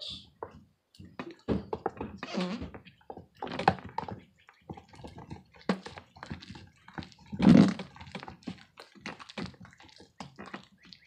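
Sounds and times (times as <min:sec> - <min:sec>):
slime squelching by hand: 0:04.8 - 0:11.0.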